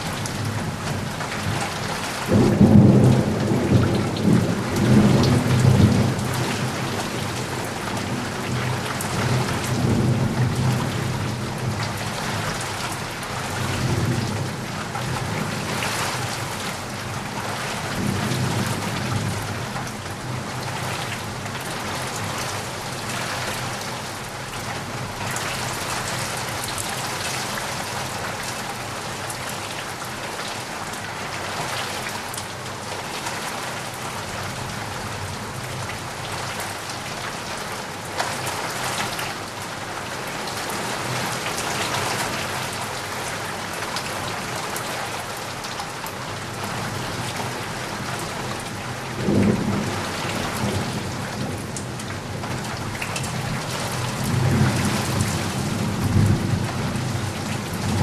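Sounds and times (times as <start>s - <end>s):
heavy rain falling: 0.0s - 58.0s
low rolling thunder: 2.2s - 12.5s, 49.1s - 58.0s.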